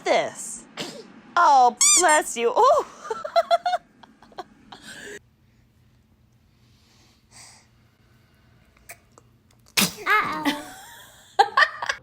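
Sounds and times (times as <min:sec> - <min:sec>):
faint baby breath: 0:06.6 - 0:07.9.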